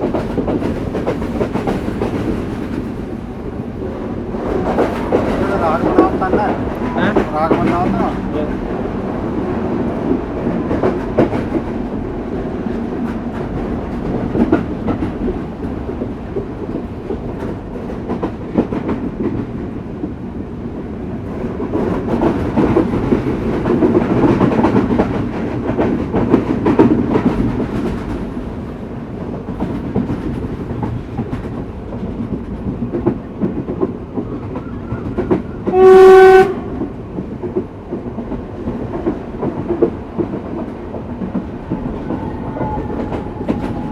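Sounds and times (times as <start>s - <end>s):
train rumble: 0.0s - 43.9s
train wheels clicking on rails: 0.0s - 43.9s
train horn blast: 35.6s - 36.8s.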